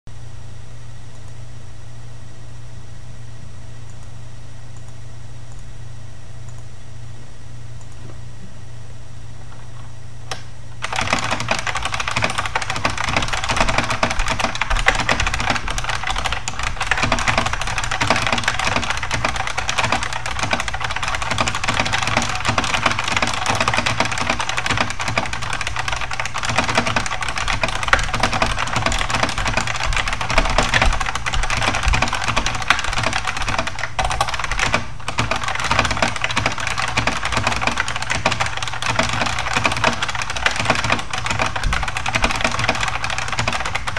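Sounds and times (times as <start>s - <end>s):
mechanical keyboard typing: 10.8s - 43.9s.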